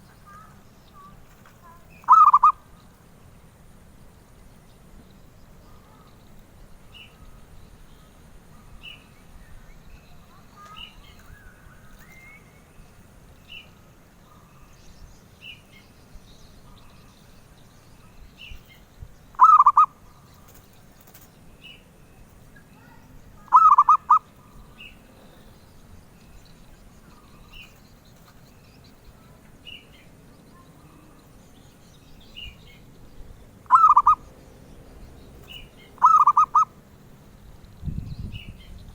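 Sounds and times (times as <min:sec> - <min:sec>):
dove cooing: 0:00.4 - 0:02.6, 0:19.4 - 0:21.2, 0:23.4 - 0:25.5, 0:33.6 - 0:34.2, 0:35.4 - 0:36.8.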